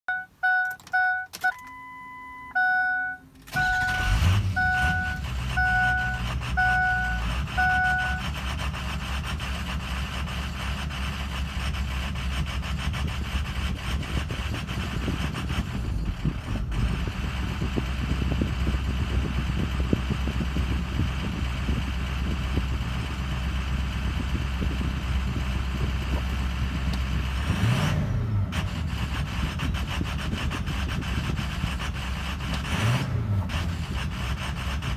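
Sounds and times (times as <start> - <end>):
dashboard chime beeping: 0.1 - 8.2
diesel engine idling: 1.8 - 34.9.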